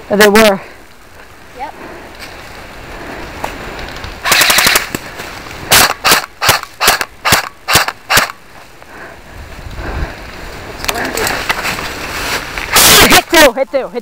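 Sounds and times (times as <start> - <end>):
airsoft gun firing: 4.2 - 5.0, 5.7 - 8.4.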